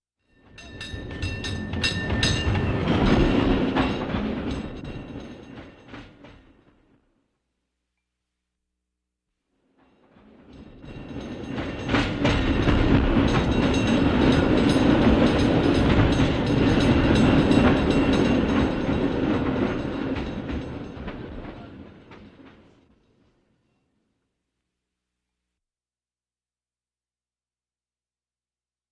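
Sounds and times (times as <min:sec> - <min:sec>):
cable car rumbling and rattling: 0:00.4 - 0:06.8, 0:10.2 - 0:23.0.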